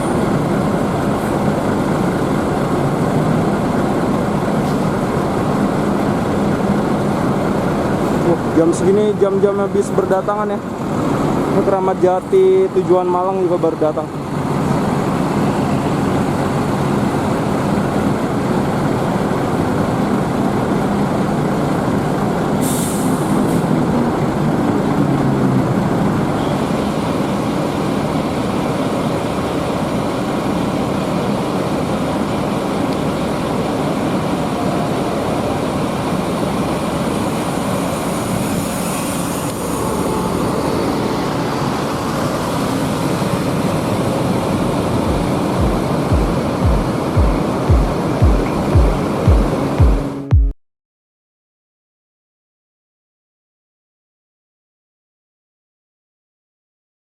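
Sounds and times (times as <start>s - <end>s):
diesel bus engine running: 0.0s - 50.3s
air-brake hiss: 22.5s - 23.7s, 37.3s - 41.0s.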